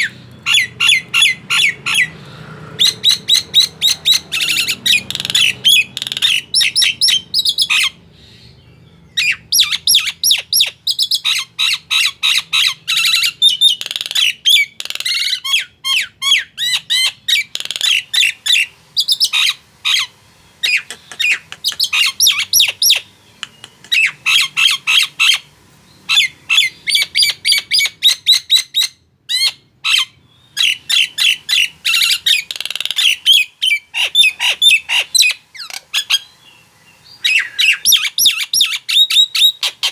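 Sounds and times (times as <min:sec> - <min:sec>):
myna whistles and squawks: 0:09.2 - 0:25.5, 0:37.2 - 0:39.9.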